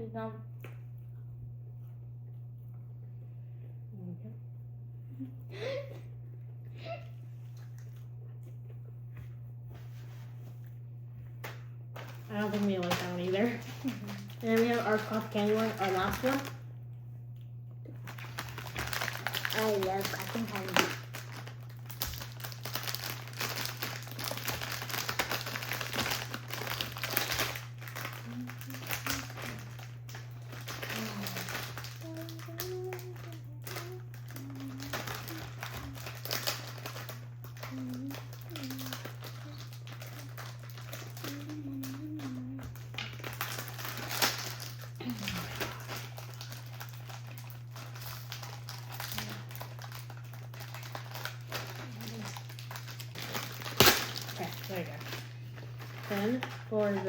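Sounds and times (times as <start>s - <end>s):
low electrical hum: 0.0s - 57.0s
plastic wrapper crinkling: 11.4s - 16.7s, 18.0s - 57.0s.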